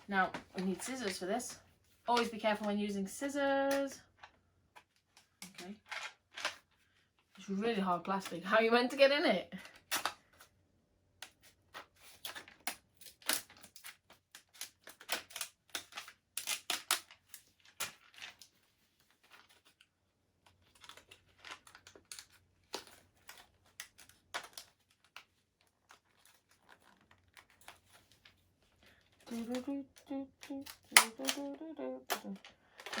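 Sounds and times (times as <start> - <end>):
plastic crackling: 0.0 - 2.9, 3.5 - 6.9, 11.2 - 33.0
scissors snipping: 30.4 - 31.5.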